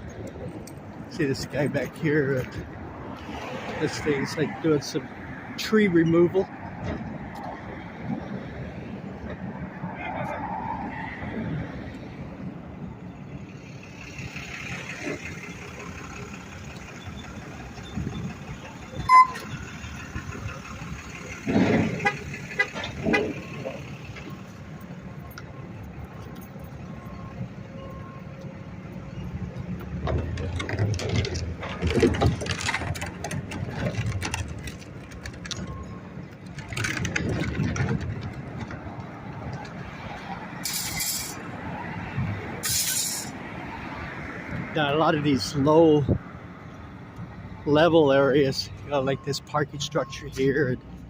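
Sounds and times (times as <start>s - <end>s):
vehicles passing: 0.0s - 51.0s
car horn toot: 19.0s - 19.5s, 21.9s - 23.5s.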